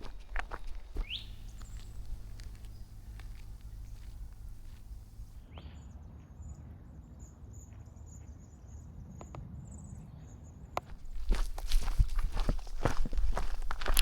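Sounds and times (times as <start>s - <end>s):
high-pitched chirping: 0.0s - 5.2s
low wind rumble: 0.0s - 5.4s, 10.9s - 14.0s.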